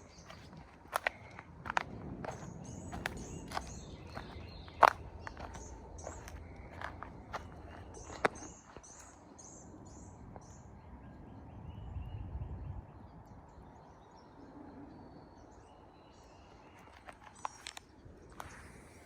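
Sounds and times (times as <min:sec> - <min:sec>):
low rumble: 0:00.0 - 0:08.8
faint outdoor background: 0:00.0 - 0:19.0
songbirds chirping: 0:00.0 - 0:19.0.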